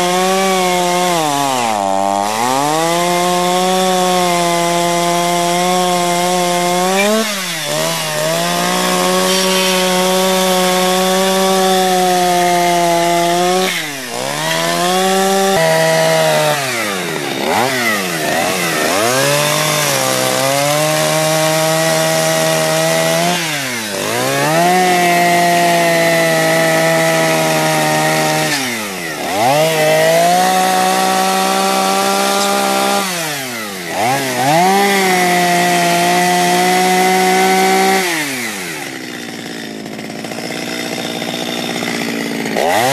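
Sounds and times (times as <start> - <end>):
chainsaw carving wood: 0.0 - 42.9.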